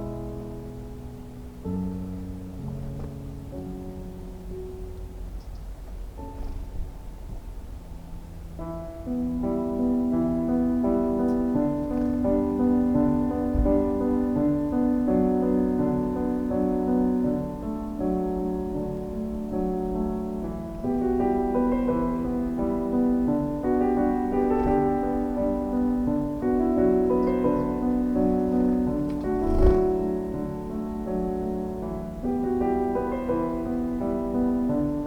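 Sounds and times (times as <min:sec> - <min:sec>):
slow piano music: 0:00.0 - 0:35.0.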